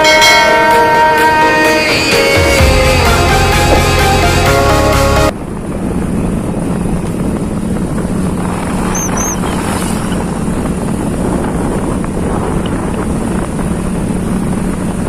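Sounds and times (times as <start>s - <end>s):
background music: 0.0s - 5.3s
vehicle engine running: 2.4s - 15.0s
short high chirps: 8.9s - 10.1s.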